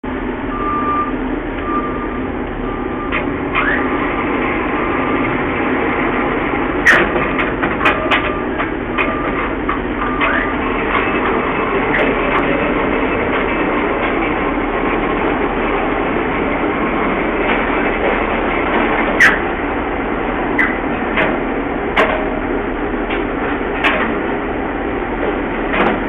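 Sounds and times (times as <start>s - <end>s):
heavy vehicle engine running: 0.0s - 26.0s
reversing alarm beeping: 0.5s - 3.9s, 8.0s - 10.6s
sharp knocks and clanks: 6.8s - 15.1s, 20.6s - 22.4s, 23.0s - 24.3s, 25.2s - 26.0s.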